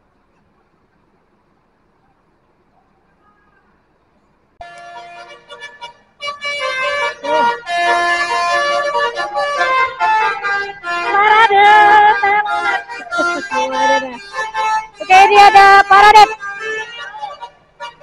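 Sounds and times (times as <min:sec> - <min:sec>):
musical air horn on bus: 0:04.6 - 0:18.0.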